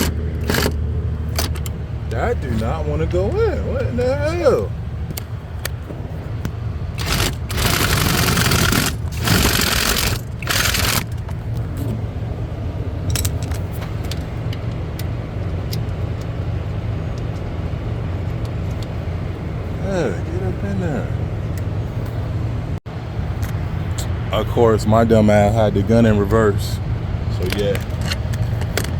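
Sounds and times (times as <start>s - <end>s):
power driver whirring: 0.0s - 4.2s, 6.9s - 12.0s.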